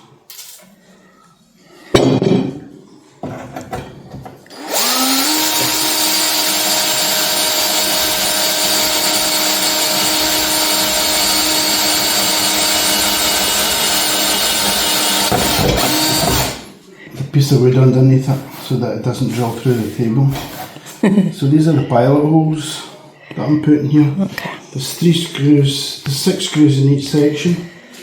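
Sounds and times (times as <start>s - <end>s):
knocks and handling: 2.0s - 4.5s
electric drill whining: 4.5s - 16.7s.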